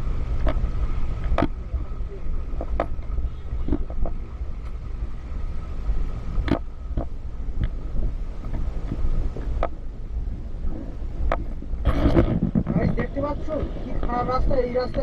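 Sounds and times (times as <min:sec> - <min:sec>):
knocks and rattles over bumps: 0:00.0 - 0:04.8, 0:10.6 - 0:15.0
vehicle rumbling over rocky track: 0:00.0 - 0:15.0
wind on microphone: 0:00.0 - 0:15.0.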